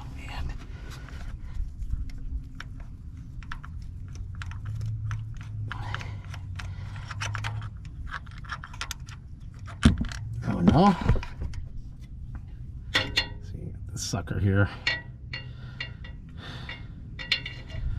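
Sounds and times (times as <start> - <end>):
steady low hum: 0.0 - 17.9.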